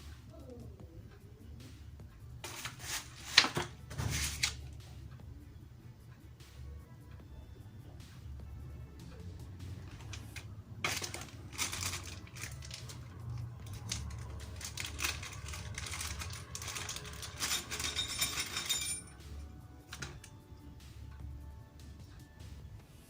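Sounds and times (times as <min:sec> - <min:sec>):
background music: 0:00.0 - 0:23.0
keyboard clicking and clattering: 0:02.4 - 0:04.9, 0:09.6 - 0:20.4.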